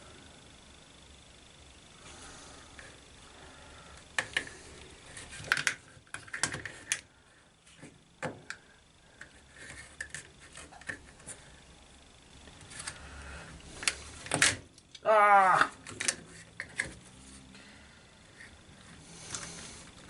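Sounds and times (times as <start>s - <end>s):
clicks and rattles of parts handled: 5.2s - 7.1s, 13.8s - 15.0s, 15.6s - 17.1s.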